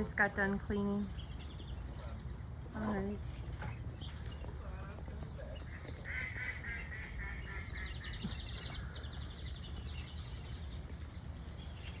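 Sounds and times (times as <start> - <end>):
birds calling: 0.0 - 12.0
high bird trills: 5.3 - 12.0.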